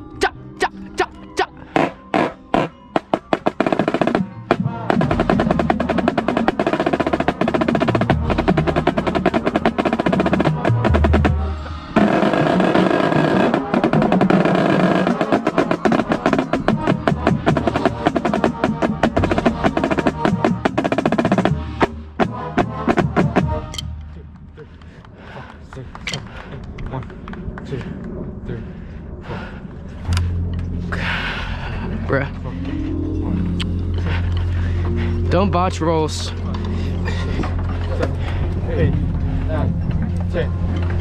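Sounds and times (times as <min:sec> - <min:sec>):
marching bass drums: 0:01.8 - 0:24.2.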